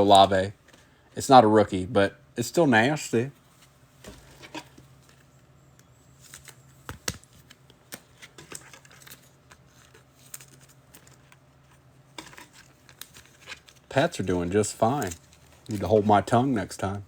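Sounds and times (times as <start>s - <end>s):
low steady hum: 0.0s - 17.0s.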